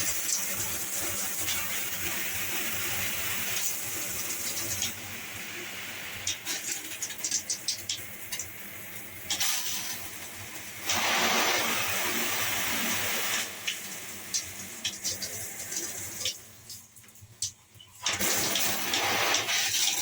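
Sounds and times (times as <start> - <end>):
shower head spraying water: 6.1 - 16.9, 18.0 - 20.0.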